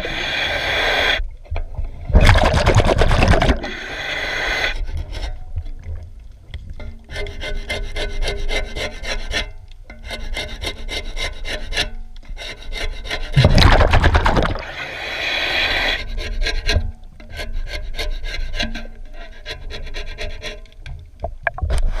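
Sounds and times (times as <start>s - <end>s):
boat hull being scraped: 6.8s - 22.0s.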